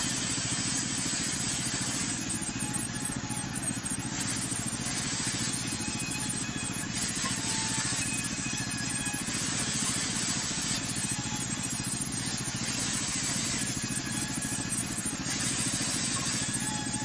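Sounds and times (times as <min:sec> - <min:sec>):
saw blade hissing: 0:00.0 - 0:17.0
sawmill engine beating: 0:00.0 - 0:17.0.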